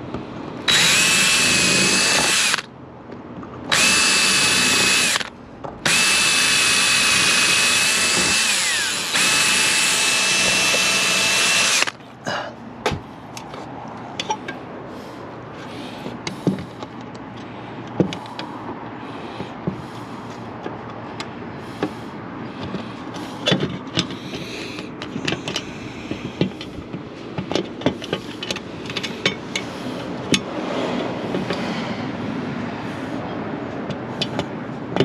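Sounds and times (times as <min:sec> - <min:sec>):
electric drill whining: 0:00.7 - 0:02.7, 0:03.7 - 0:12.0.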